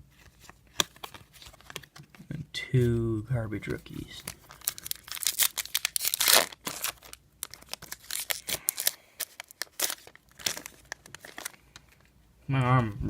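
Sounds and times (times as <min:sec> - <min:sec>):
foil wrapper crinkling and tearing: 0:03.7 - 0:12.0.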